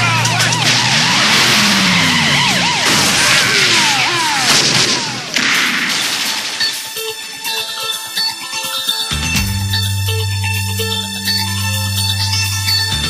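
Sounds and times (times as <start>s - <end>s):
crashes: 0.0s - 7.2s
music with steady notes: 6.7s - 13.0s.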